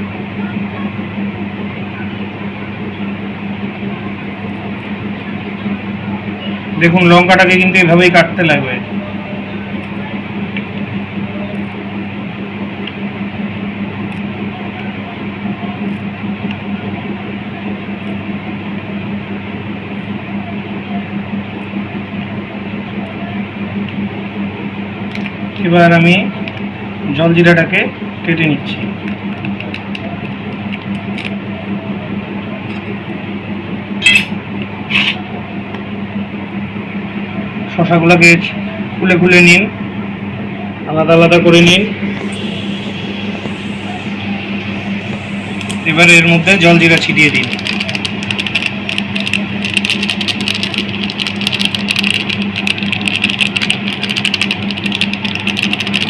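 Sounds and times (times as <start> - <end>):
steady low hum: 0.0 - 56.0
packet crackling: 45.6 - 56.0.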